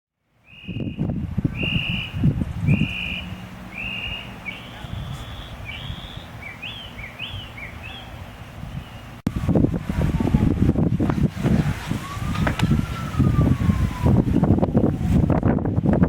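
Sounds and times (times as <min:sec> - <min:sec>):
bird singing whistled notes: 0:00.4 - 0:09.2
wind rumble on microphone: 0:00.5 - 0:16.0.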